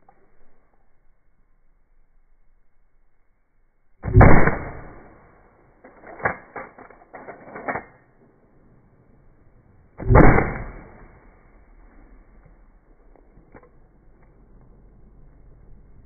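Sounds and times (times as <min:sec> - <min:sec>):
shotgun shots: 0:04.0 - 0:05.2, 0:10.0 - 0:11.2.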